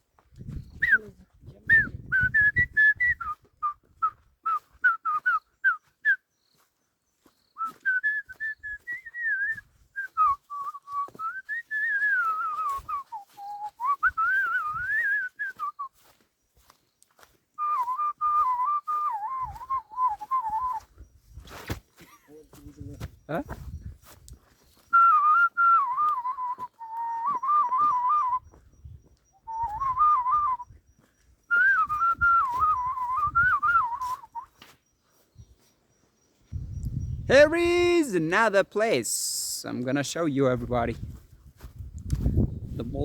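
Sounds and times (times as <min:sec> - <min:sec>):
person whistling a tune: 0:00.6 - 0:06.2, 0:07.6 - 0:16.2, 0:17.6 - 0:21.0, 0:24.8 - 0:28.6, 0:29.4 - 0:30.8, 0:31.5 - 0:34.7.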